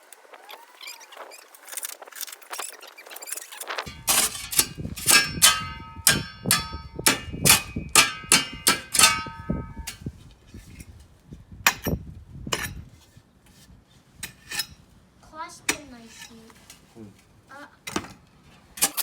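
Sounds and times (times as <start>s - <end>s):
metal tool striking with ringing clangs: 3.9s - 10.0s.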